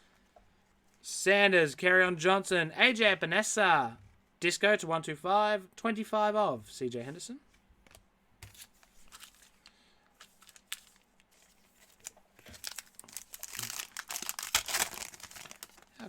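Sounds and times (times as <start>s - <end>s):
foil wrapper crinkling and tearing: 8.6s - 16.0s.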